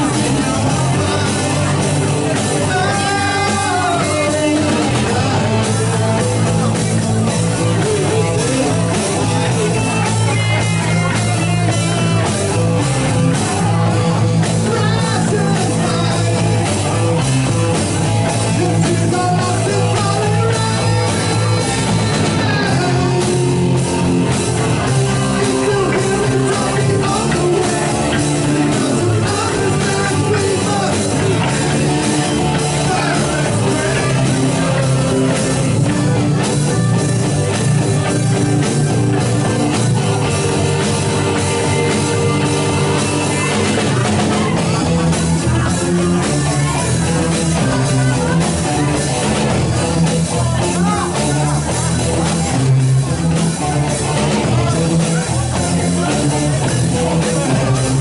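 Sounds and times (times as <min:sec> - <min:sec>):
bass: 0:00.0 - 0:58.0
drum kit: 0:00.0 - 0:58.0
electric guitar: 0:00.0 - 0:58.0
keyboards: 0:00.0 - 0:58.0.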